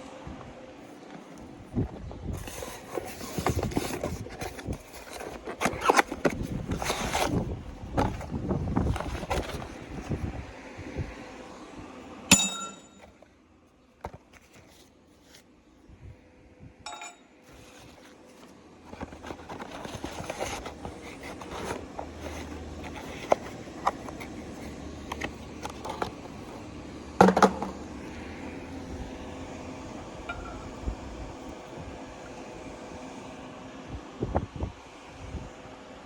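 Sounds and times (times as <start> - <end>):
steady low hum: 0.0 - 36.0
ringing metal clanks: 12.3 - 13.1, 16.9 - 17.3.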